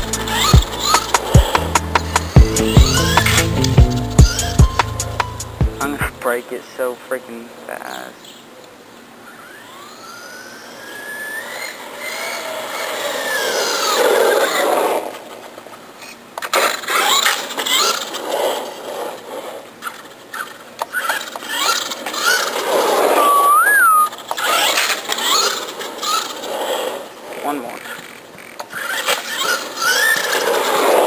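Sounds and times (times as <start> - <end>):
electric motor whining: 0.0 - 6.0, 9.3 - 14.8, 28.8 - 31.0.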